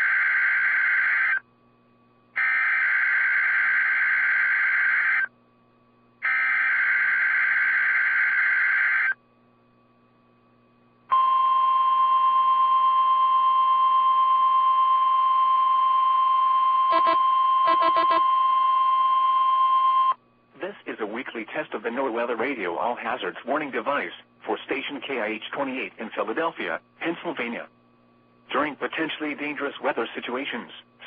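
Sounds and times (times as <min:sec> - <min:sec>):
steady warning alarm tone: 0:00.0 - 0:01.4, 0:02.4 - 0:05.3, 0:06.2 - 0:09.2, 0:11.1 - 0:20.2
digital data bursts: 0:16.9 - 0:18.2.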